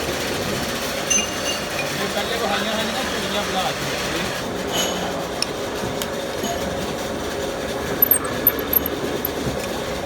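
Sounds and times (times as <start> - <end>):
light metallic clinks: 8.0 - 9.8.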